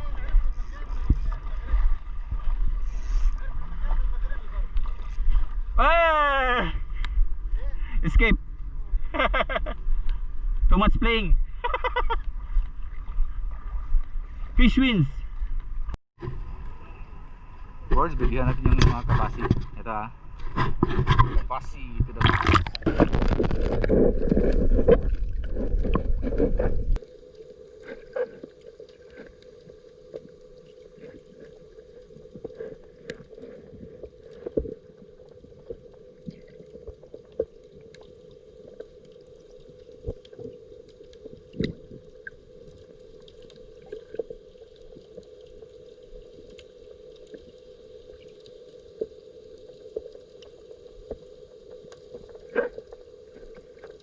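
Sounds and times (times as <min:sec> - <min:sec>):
water sloshing against camera: 0:00.0 - 0:05.8, 0:17.8 - 0:54.0
muffled underwater hum: 0:00.0 - 0:54.0.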